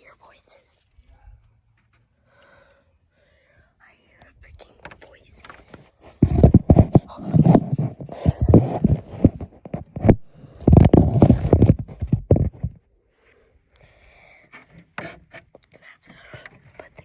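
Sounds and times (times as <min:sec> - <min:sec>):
close knocks and thumps: 0:04.7 - 0:12.8.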